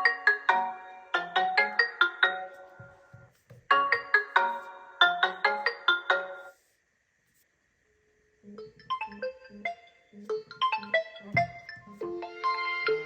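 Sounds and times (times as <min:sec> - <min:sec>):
different ringtone melody: 0:00.0 - 0:03.0, 0:03.7 - 0:06.6, 0:08.6 - 0:13.0
phone ringtone melody: 0:00.0 - 0:03.0, 0:03.7 - 0:06.5, 0:10.6 - 0:13.0.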